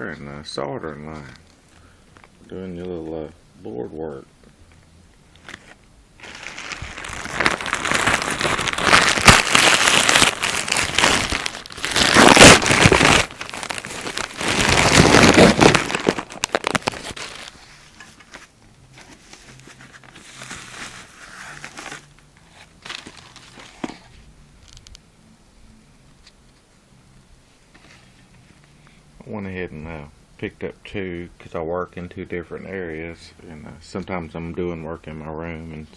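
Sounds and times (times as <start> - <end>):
plastic packaging crinkling: 5.3 - 25.0.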